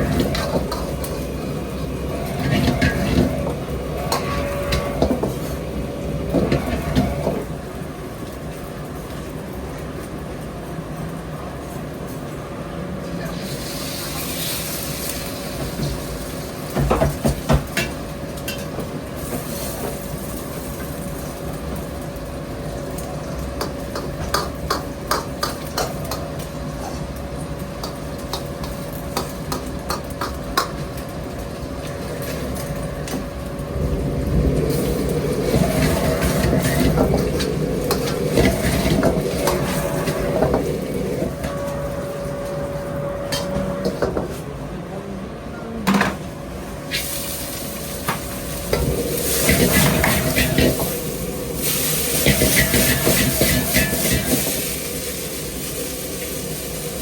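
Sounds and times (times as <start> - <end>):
steady hum: 0.0 - 8.4, 31.2 - 57.0
food sizzling in a pan: 13.2 - 33.4, 34.6 - 42.0, 46.6 - 57.0
utensils clattering on a pan: 48.8 - 50.9, 52.2 - 54.6.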